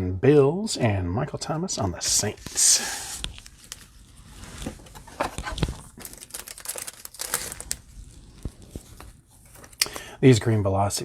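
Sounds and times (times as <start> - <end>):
cards being handled: 2.1 - 10.0
cellophane wrapper crinkling: 3.2 - 9.9.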